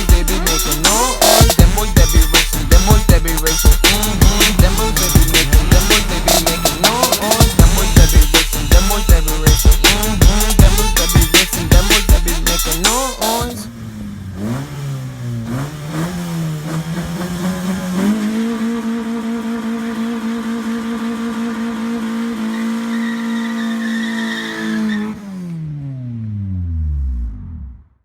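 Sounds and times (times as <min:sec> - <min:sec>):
hip-hop music: 0:00.0 - 0:13.8
car engine with loud exhaust revving: 0:00.0 - 0:27.9.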